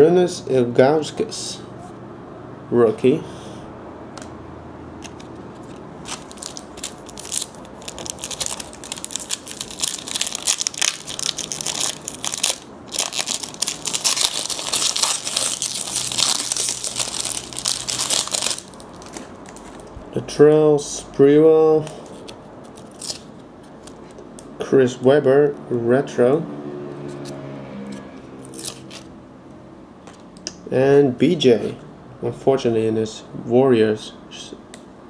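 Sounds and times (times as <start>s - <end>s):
plastic wrapper crinkling and tearing: 5.1s - 20.0s, 22.0s - 24.2s.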